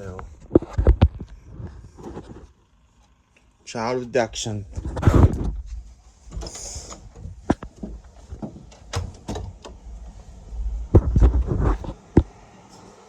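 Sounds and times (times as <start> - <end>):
heavy thumps: 4.4 - 12.0
scattered clicks and knocks: 4.7 - 12.3.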